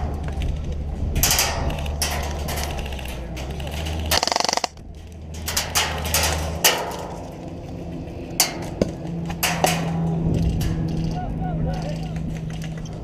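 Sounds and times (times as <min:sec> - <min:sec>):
airsoft guns firing: 0:04.1 - 0:04.8.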